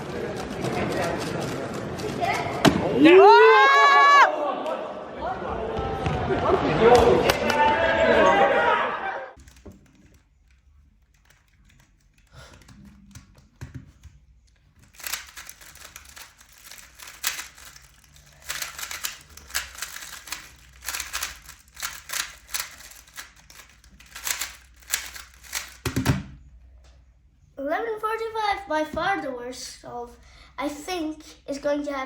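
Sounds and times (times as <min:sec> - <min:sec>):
plastic puzzle cube clicking turns: 0:09.4 - 0:26.3.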